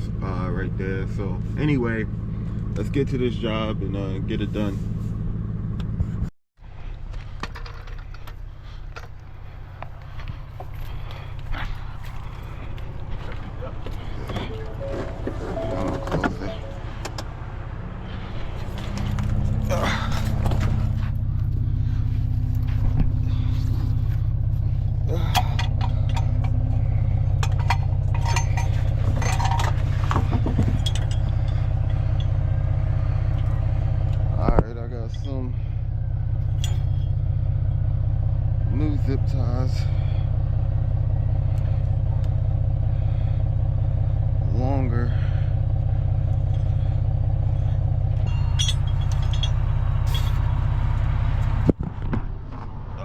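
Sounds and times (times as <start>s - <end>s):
vehicle engine running: 0.0s - 53.0s
metallic clinks and clicks: 48.2s - 50.4s.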